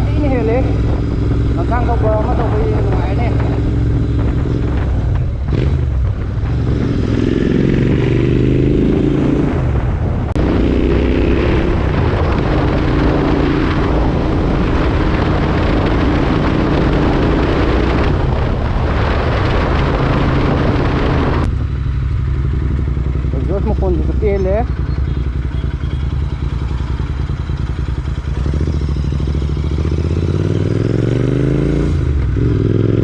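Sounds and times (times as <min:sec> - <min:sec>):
motorcycle engine accelerating: 0:00.0 - 0:33.0.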